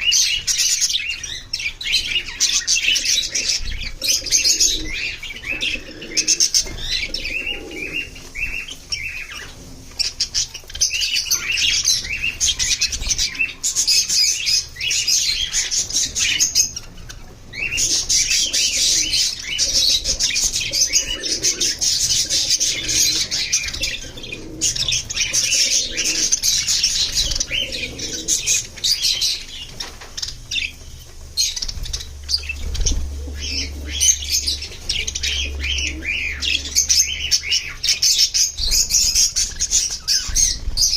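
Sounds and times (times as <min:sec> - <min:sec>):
budgies chirping and warbling: 0:00.0 - 0:40.9.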